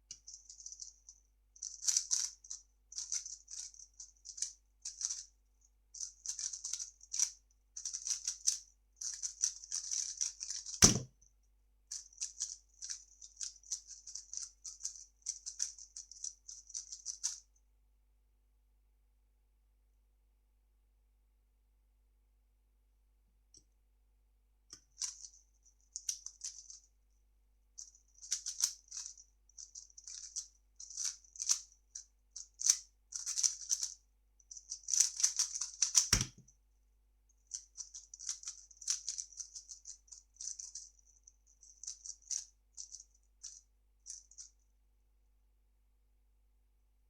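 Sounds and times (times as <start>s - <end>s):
plastic cube clicking and rattling: 1.6s - 5.3s, 6.0s - 11.1s, 11.9s - 17.4s, 28.2s - 31.7s, 32.4s - 34.0s, 34.6s - 36.4s, 37.5s - 40.9s
sharp knock: 10.8s - 11.1s.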